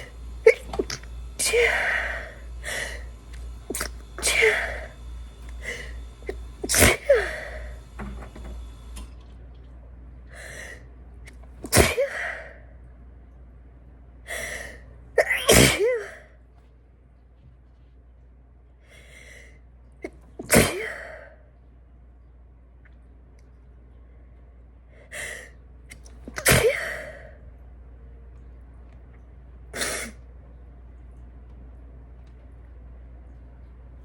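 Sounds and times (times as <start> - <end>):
woman sneezing: 5.6 - 7.7, 11.6 - 12.2, 15.2 - 16.2, 26.4 - 27.1.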